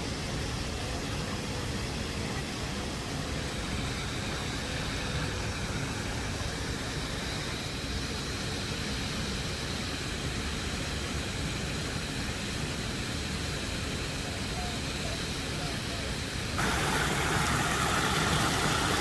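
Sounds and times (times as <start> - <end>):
waterfall rushing: 16.6 - 19.0.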